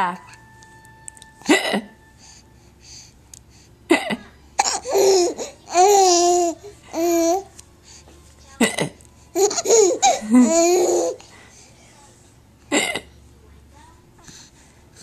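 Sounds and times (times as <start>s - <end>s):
person hiccuping: 1.5s - 2.0s, 12.7s - 13.1s.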